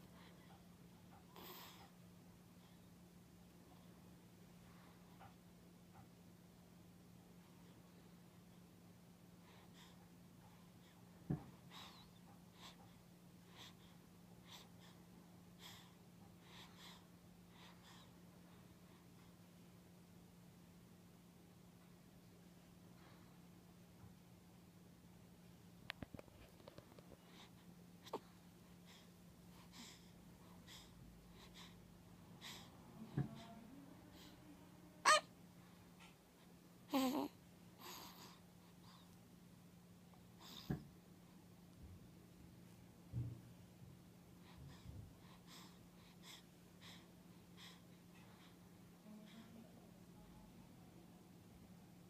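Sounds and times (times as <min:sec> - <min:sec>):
low steady hum: 0:00.0 - 0:52.0
sleeping person breathing: 0:09.4 - 0:19.3, 0:44.4 - 0:49.6.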